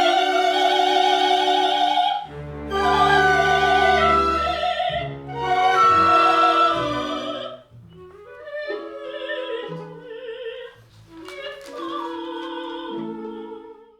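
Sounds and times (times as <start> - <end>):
operatic singing with vibrato: 0.0 - 7.7, 8.3 - 13.9
orchestral accompaniment: 2.2 - 10.1.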